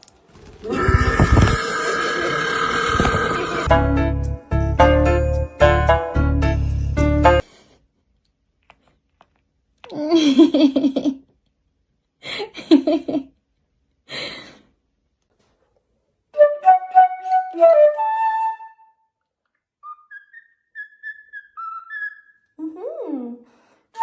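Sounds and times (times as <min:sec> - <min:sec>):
parrot whistling a tune: 0:19.8 - 0:22.5.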